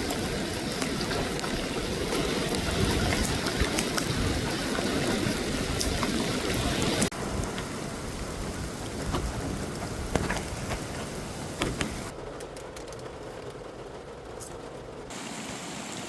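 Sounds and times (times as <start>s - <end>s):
sea waves on a beach: 0.0s - 12.1s.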